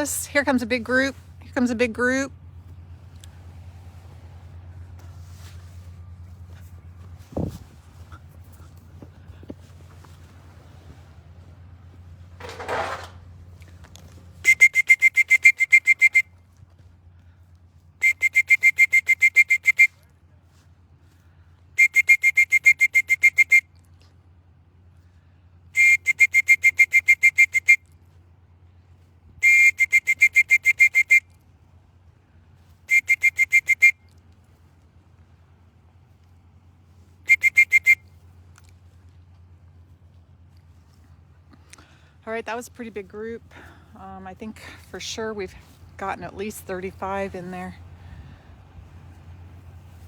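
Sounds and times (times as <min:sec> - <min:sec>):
trilling whistle bursts: 0:14.4 - 0:16.4, 0:18.0 - 0:19.9, 0:21.8 - 0:23.7, 0:25.8 - 0:27.9, 0:29.4 - 0:31.3, 0:32.9 - 0:34.1, 0:37.3 - 0:38.1.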